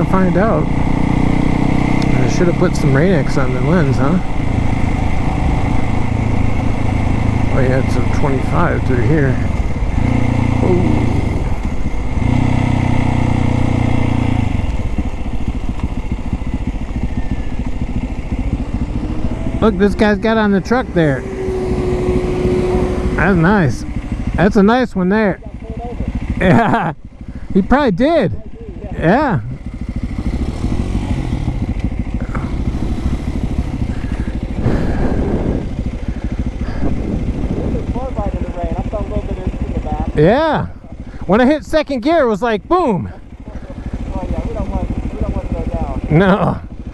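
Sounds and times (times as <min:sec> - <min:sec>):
dirt bike engine: 0:00.0 - 0:46.9
rush of wind or tyre noise: 0:30.1 - 0:38.4.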